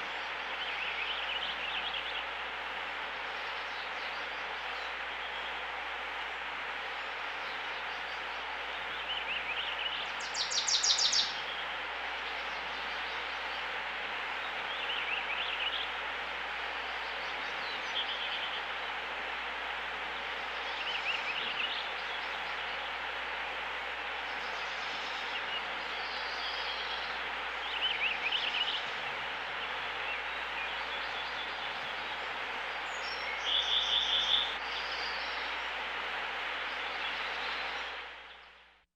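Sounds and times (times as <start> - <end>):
outdoor background hiss: 0.0 - 38.8
small birds chirping and singing: 7.5 - 13.7, 24.3 - 35.6.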